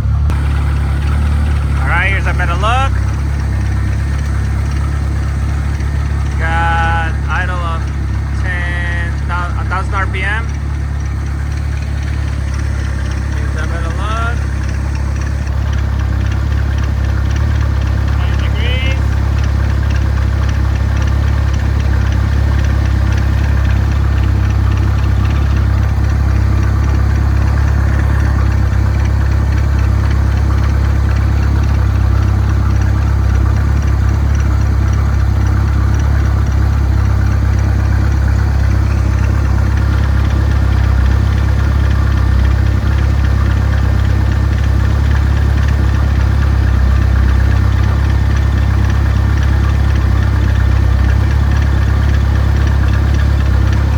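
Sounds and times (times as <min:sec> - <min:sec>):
engine idling: 0:00.0 - 0:53.9.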